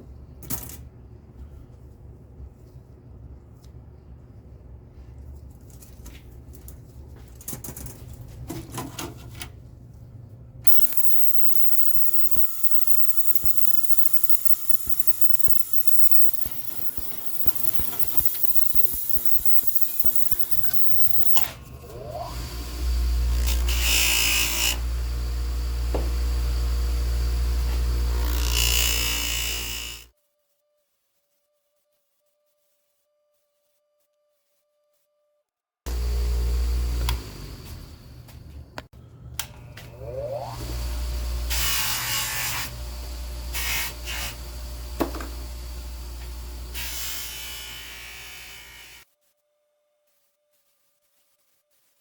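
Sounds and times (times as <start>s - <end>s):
small motorised tool running: 10.7s - 30.1s.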